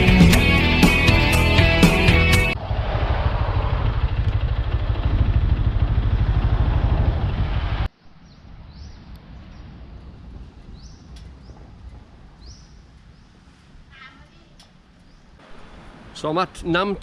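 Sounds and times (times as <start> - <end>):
motorbike rumbling: 0.0 - 13.4
wind noise: 2.5 - 14.0.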